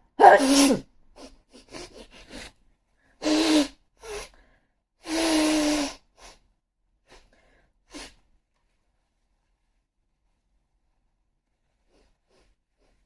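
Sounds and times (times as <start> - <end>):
person sneezing: 0.2 - 0.9.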